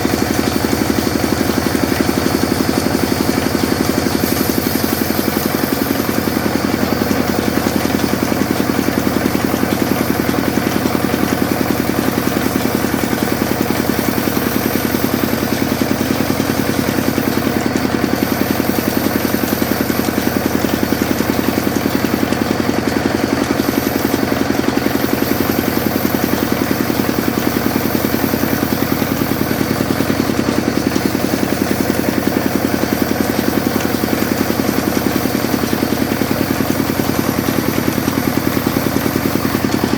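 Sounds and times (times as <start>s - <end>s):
sawmill machine humming: 0.0s - 39.9s.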